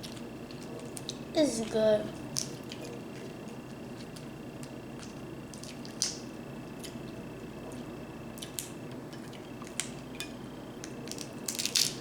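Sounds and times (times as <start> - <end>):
chewing seafood: 2.2 - 6.2.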